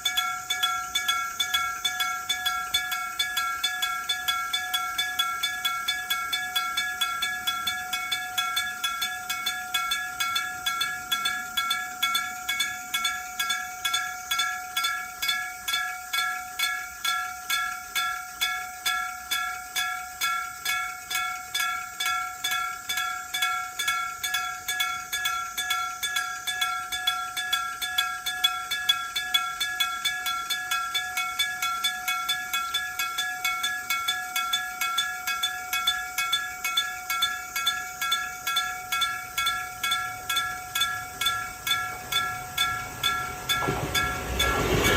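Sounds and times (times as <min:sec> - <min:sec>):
level crossing bell ringing: 0:35.3 - 0:44.9.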